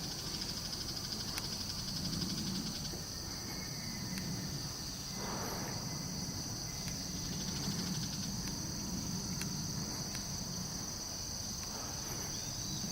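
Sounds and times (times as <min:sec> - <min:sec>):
high-pitched insect chorus: 0:00.0 - 0:12.9
low background rumble: 0:00.0 - 0:12.9
faint clicks: 0:01.3 - 0:01.6, 0:04.1 - 0:04.4, 0:09.3 - 0:10.3.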